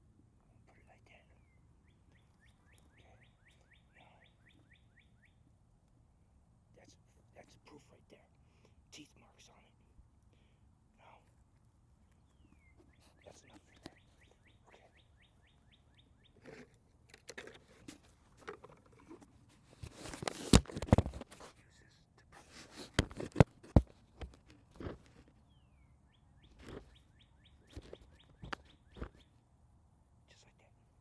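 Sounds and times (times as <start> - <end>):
bird trilling: 0.8 - 5.4, 25.5 - 29.4
crackling rustles: 11.2 - 25.5, 26.4 - 29.4.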